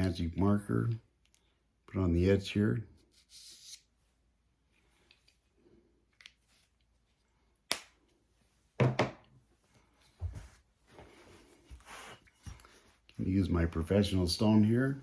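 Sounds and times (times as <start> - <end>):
knocks of things set down: 8.8 - 9.2.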